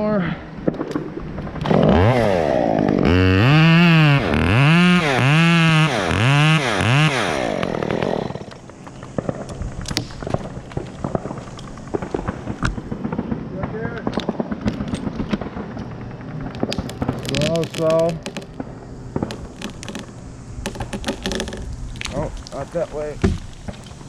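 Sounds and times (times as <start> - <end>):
chainsaw cutting: 1.5 - 9.6, 19.2 - 24.0
scattered clicks: 19.2 - 22.6.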